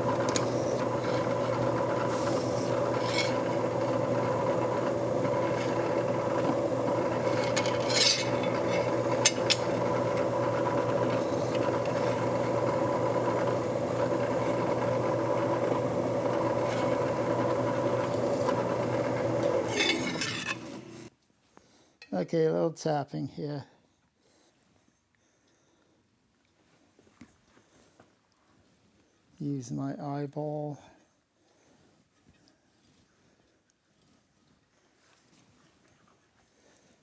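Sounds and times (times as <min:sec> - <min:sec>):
cutter scraping metal: 0:00.0 - 0:21.1
drill press motor running: 0:00.0 - 0:21.1.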